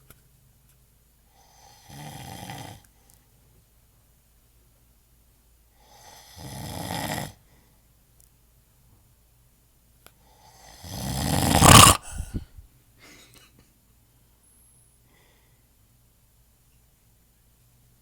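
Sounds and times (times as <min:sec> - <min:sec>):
man snoring: 0:01.8 - 0:02.8, 0:10.6 - 0:12.4.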